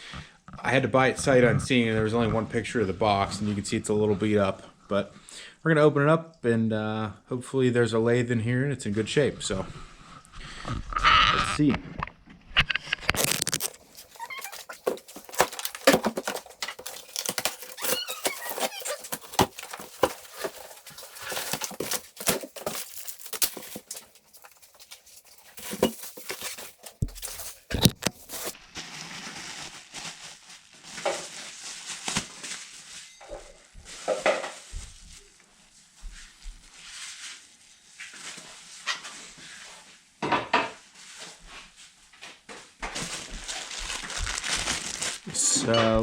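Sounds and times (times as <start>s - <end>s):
cardboard crinkling and tearing: 12.9s - 32.9s, 43.0s - 45.5s.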